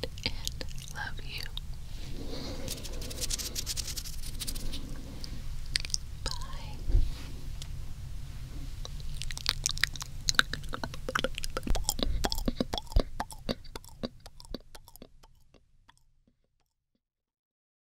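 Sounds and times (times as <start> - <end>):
wet mouth clicks and smacks: 0.0 - 1.6, 5.7 - 6.5, 8.8 - 16.0.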